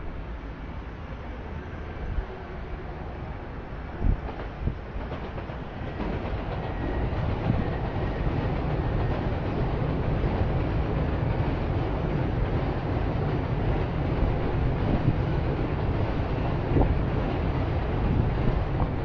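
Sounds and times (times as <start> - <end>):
train rumbling past: 0.0 - 19.0.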